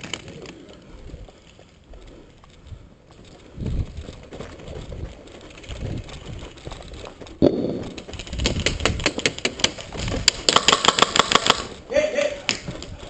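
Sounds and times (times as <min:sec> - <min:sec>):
rustling of movement and gear: 0:00.0 - 0:10.5
airsoft guns firing clicks: 0:08.6 - 0:11.8.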